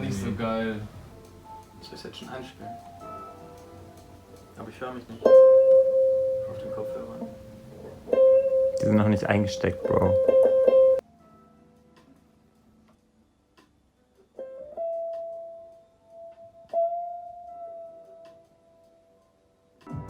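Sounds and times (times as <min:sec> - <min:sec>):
guitar notes ringing: 0:00.0 - 0:11.0.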